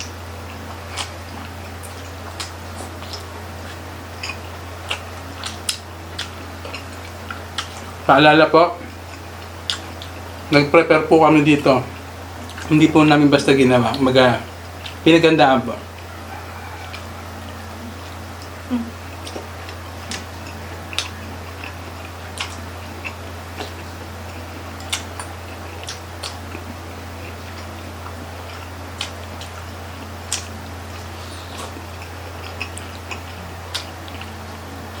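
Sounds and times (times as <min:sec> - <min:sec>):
chewing with clicks and smacks: 0:00.0 - 0:08.1, 0:08.8 - 0:10.6, 0:11.5 - 0:15.0, 0:15.9 - 0:35.0
steady low hum: 0:00.0 - 0:35.0.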